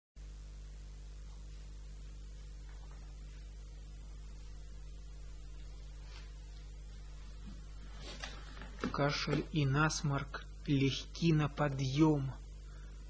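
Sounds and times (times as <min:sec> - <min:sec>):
electrical mains hum: 0:00.2 - 0:13.0.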